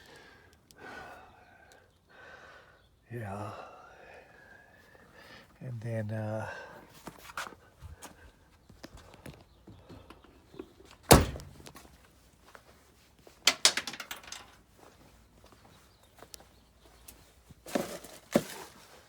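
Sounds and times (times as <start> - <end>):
heavy thunk: 11.1 - 11.7.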